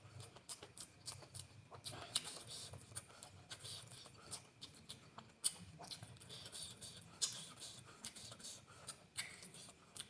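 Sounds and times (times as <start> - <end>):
wet mouth clicks and chewing: 0.1 - 10.0
sharp mouth smacks: 9.2 - 10.0.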